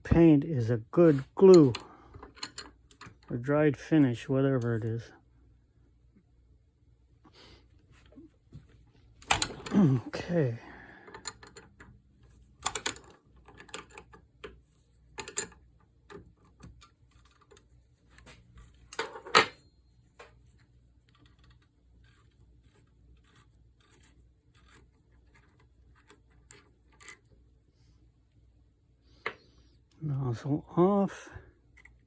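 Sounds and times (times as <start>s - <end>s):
metal parts clicking and clinking: 1.5s - 3.3s, 11.0s - 11.9s, 12.6s - 14.2s, 15.1s - 16.2s, 18.9s - 20.4s.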